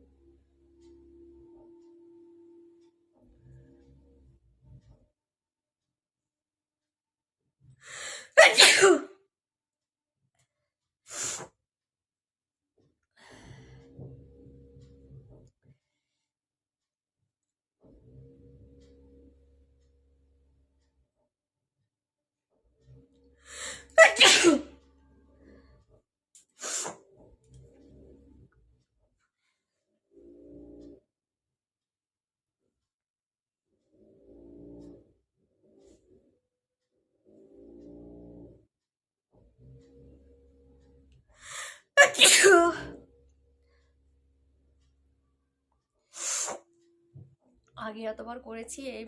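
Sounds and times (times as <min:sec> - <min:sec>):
short breath: 0:07.8 - 0:08.3, 0:41.4 - 0:41.9
person sneezing: 0:08.0 - 0:09.1, 0:23.6 - 0:24.7, 0:41.6 - 0:43.0.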